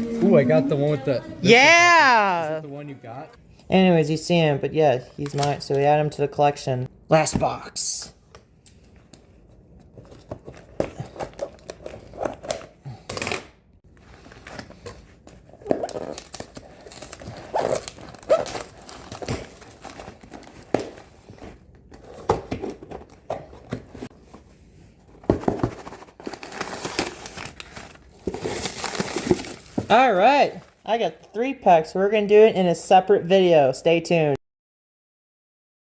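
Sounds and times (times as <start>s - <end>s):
packaging tearing and crinkling: 14.1s - 21.2s, 25.8s - 29.9s.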